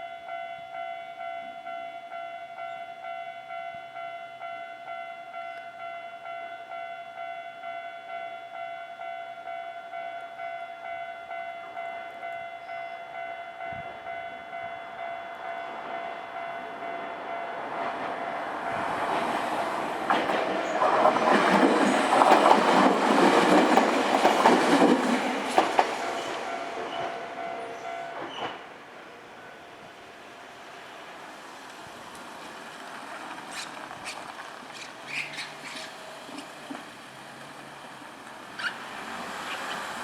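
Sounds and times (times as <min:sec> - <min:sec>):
level-crossing bell ringing: 0:00.0 - 0:18.6
train wheels clacking over rail joints: 0:18.9 - 0:27.2, 0:32.1 - 0:37.8.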